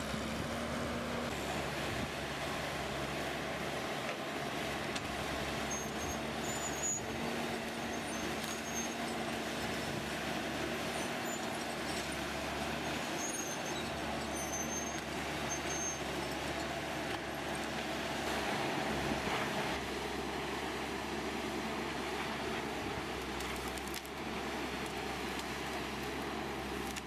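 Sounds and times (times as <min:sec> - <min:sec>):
heavy machinery engine running: 0:00.0 - 0:27.0.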